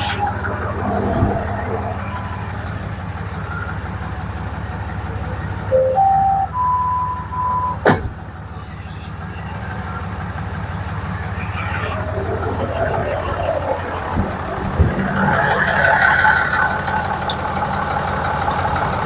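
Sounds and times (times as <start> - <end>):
falling electronic sweep: 0.0 - 3.1, 11.0 - 17.3
diesel engine idling: 0.0 - 19.0
electronic beeps rising in pitch: 5.7 - 7.8.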